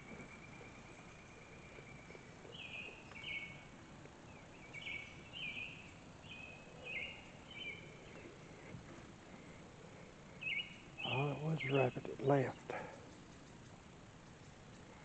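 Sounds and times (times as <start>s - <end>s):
bird chirping: 0.0s - 8.7s, 9.4s - 15.0s.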